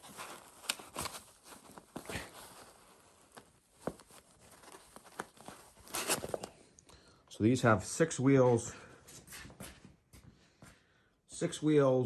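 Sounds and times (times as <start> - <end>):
rustling: 0.0 - 6.8.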